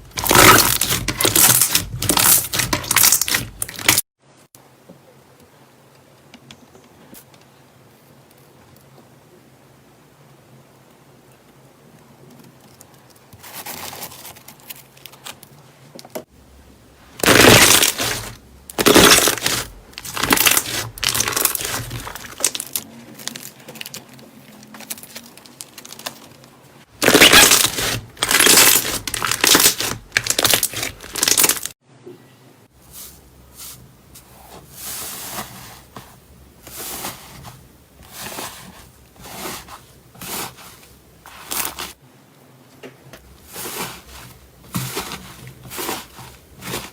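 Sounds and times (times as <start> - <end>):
slime squishing and crackling: 0.0 - 4.0, 17.2 - 31.8, 34.4 - 42.0, 43.3 - 46.9.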